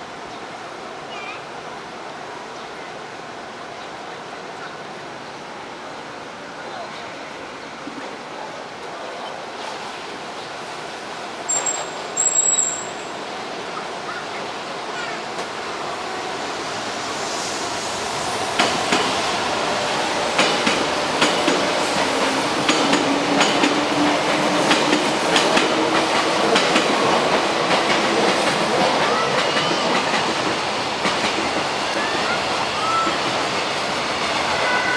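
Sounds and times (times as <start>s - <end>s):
train rumble: 0.0s - 34.9s
high squeal: 11.5s - 13.1s.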